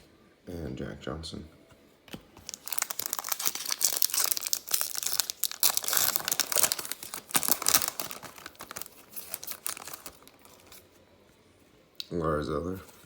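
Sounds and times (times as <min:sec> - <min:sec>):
plastic wrapper tearing and crackling: 0:02.4 - 0:10.8.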